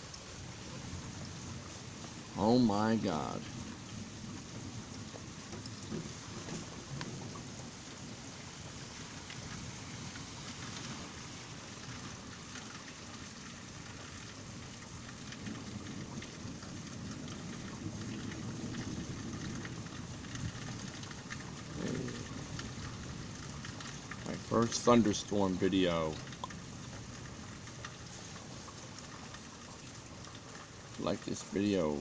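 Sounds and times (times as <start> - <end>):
heavy rain falling: 0.0 - 32.0
low rumble of thunder: 3.4 - 11.2, 14.1 - 25.3.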